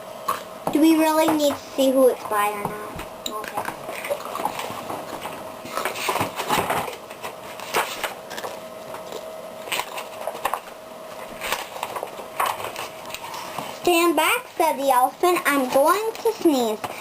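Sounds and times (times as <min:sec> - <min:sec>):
faint steady hum: 0:00.0 - 0:17.0
book pages rustling: 0:03.9 - 0:13.8.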